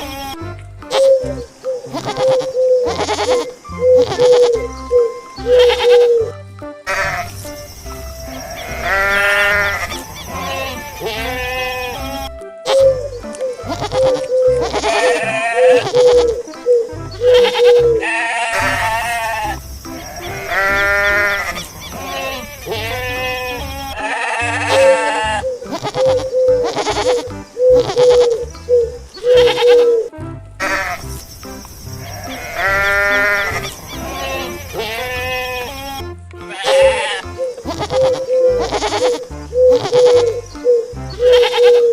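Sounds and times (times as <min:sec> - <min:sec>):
goats bleating: 0:00.0 - 0:03.4, 0:06.9 - 0:07.4, 0:08.1 - 0:12.3, 0:13.7 - 0:16.4, 0:17.2 - 0:28.4, 0:29.2 - 0:31.2, 0:31.9 - 0:40.4, 0:41.2 - 0:41.9
background music with short notes: 0:00.0 - 0:41.9.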